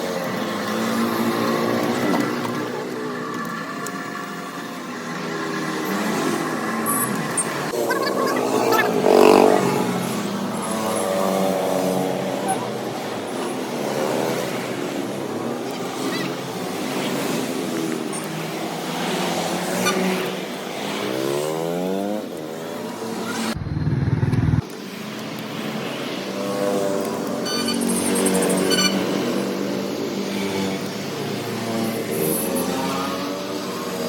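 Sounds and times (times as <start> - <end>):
street sounds: 0.0 - 34.0
vehicle engine revving: 23.5 - 24.7.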